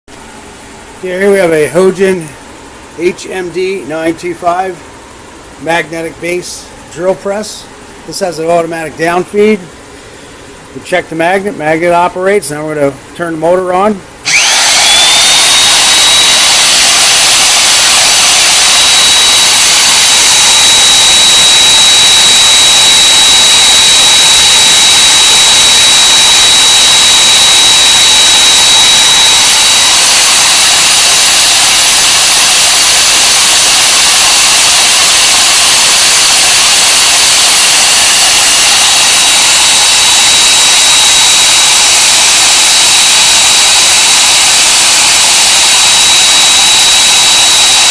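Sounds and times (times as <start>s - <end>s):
drill press motor whining: 14.2s - 47.9s.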